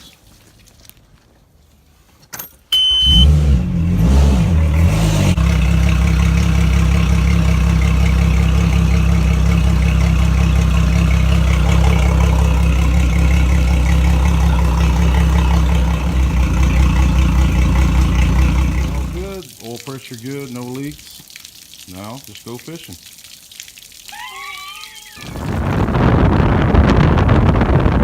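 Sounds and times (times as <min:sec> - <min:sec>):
short high beep: 0:02.7 - 0:03.3
outboard motor starting and idling: 0:02.8 - 0:19.4.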